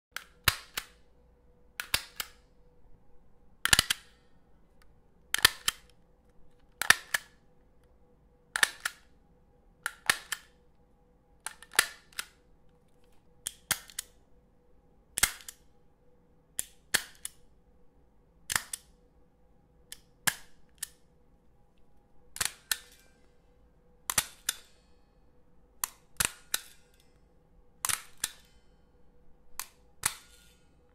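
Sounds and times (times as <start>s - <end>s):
stapler clicking: 5.4s - 5.9s, 27.8s - 28.4s.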